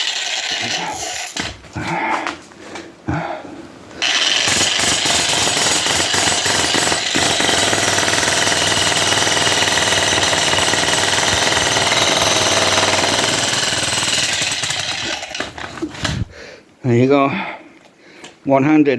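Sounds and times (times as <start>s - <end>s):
jackhammer hammering: 0.0s - 1.5s, 4.0s - 15.8s.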